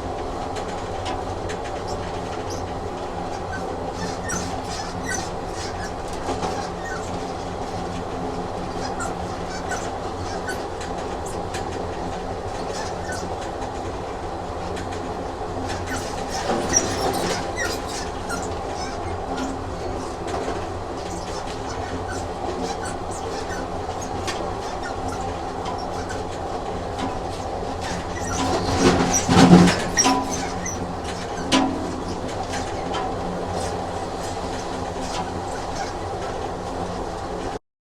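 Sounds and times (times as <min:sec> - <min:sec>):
rail clicks: 0:00.0 - 0:37.6
train rumbling on rails: 0:00.0 - 0:37.6.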